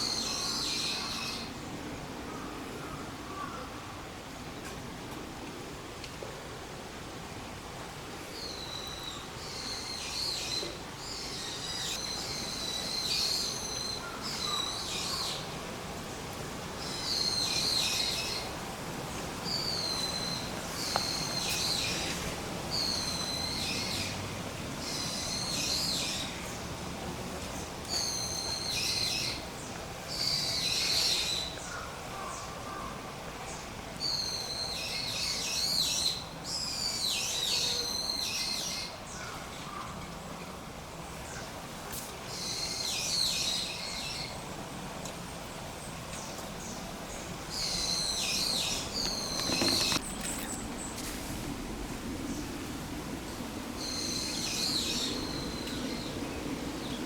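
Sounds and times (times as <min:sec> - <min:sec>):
birds calling high-pitched: 0:47.1 - 0:50.6.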